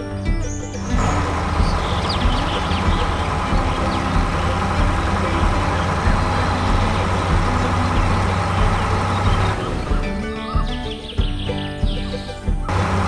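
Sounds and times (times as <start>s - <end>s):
vehicle engine idling: 0.8s - 10.9s, 12.7s - 13.0s.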